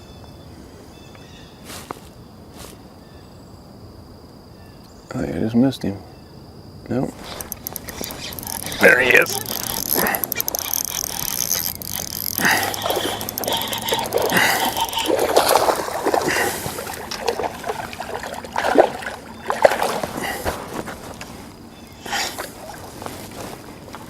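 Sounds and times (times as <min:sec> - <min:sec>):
water splashing and trickling: 0:07.2 - 0:20.8, 0:22.4 - 0:23.2.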